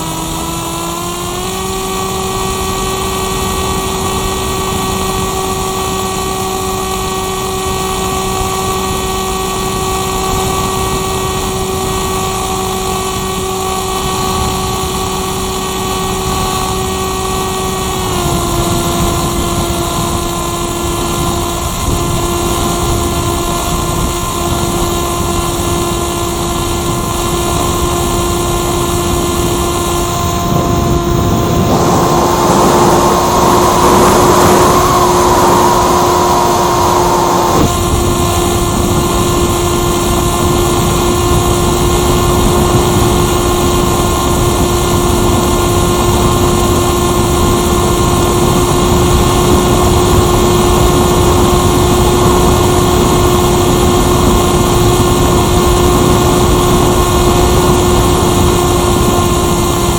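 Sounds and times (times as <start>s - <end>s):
electric motor and propeller whine: 0.0s - 59.9s
rush of air: 8.9s - 59.9s.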